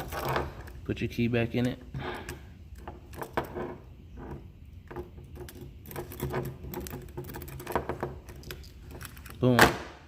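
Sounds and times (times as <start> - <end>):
key fob clicks and rattles: 5.2 - 9.5.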